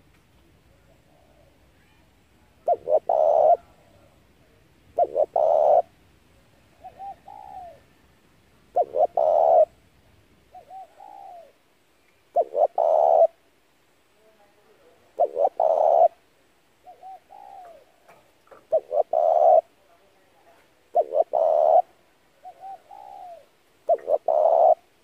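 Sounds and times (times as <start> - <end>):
dove cooing: 0.7 - 1.7, 2.4 - 4.2, 5.0 - 5.9, 6.6 - 8.0, 8.7 - 9.8, 10.5 - 11.6, 12.3 - 13.4, 15.1 - 16.2, 16.8 - 19.8, 20.9 - 25.0.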